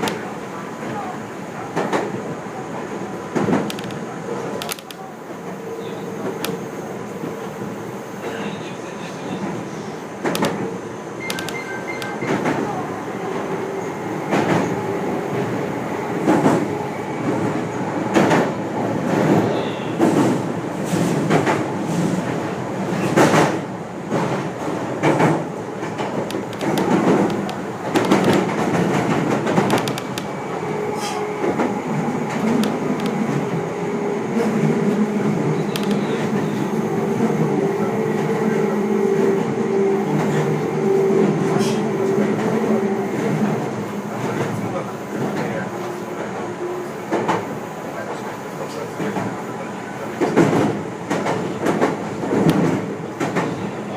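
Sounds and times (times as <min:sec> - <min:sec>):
train running rumble: 0:00.0 - 0:53.8
train wheels knocking over rail joints: 0:25.0 - 0:30.3.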